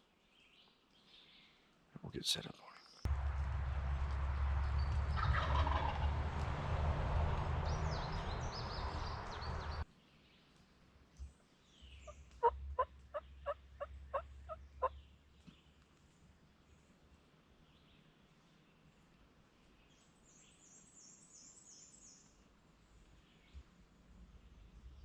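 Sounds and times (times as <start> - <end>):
wind buffeting microphone: 3.1 - 9.8
distant turkey gobble: 3.4 - 9.8, 12.0 - 15.0
turkey yelps: 5.1 - 6.2, 12.4 - 14.9.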